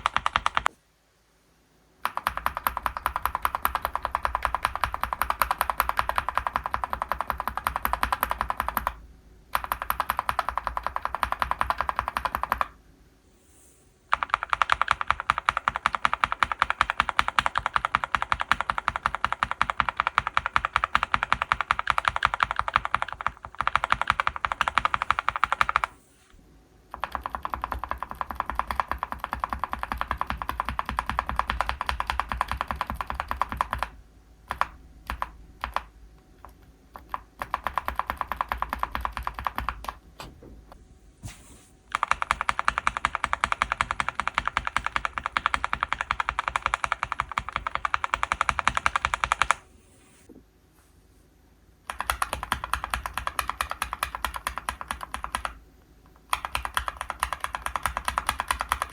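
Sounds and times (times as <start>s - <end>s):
typing on mechanical keyboard: 0.0s - 0.8s, 2.0s - 12.8s, 14.1s - 25.9s, 26.9s - 40.0s, 41.9s - 49.6s, 51.9s - 58.9s.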